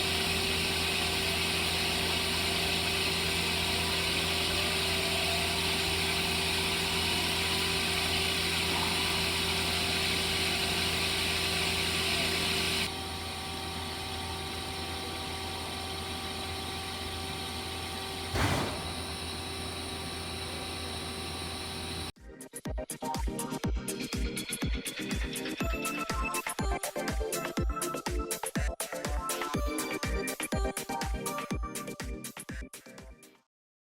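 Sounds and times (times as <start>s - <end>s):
lathe machine hum: 0.0s - 22.1s.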